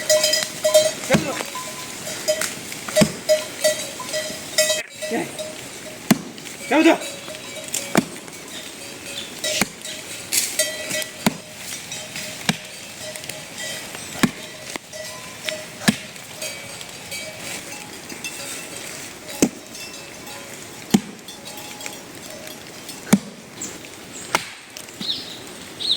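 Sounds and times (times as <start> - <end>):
sharp chopping strikes: 1.0 - 1.5, 2.9 - 3.3, 6.0 - 6.5, 7.9 - 8.3, 9.5 - 11.6, 12.4 - 12.8, 14.0 - 14.6, 15.8 - 16.2, 20.9 - 21.3, 23.0 - 23.4, 24.2 - 24.8.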